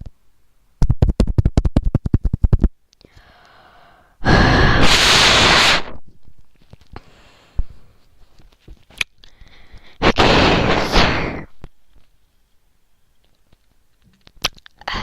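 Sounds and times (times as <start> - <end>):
blowing onto microphone: 4.2 - 6.1, 9.7 - 11.6.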